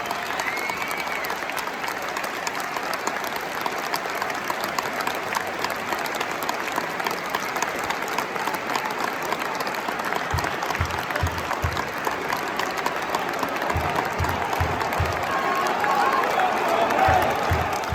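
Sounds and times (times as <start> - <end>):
stadium crowd applauding: 0.0 - 17.9
low thuds: 13.6 - 15.5, 17.0 - 17.9.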